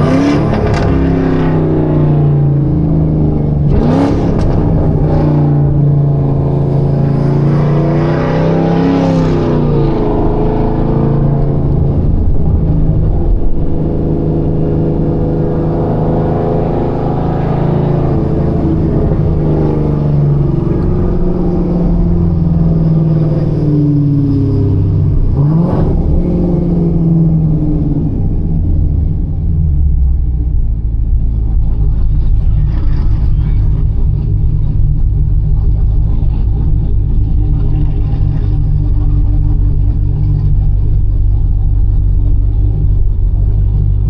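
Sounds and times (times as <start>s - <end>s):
car engine revving: 0.0s - 44.0s.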